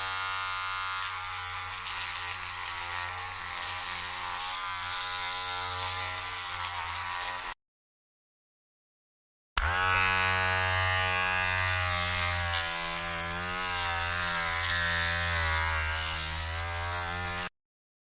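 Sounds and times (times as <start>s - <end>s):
electric hair trimmer buzzing: 0.0s - 7.6s, 9.6s - 17.5s.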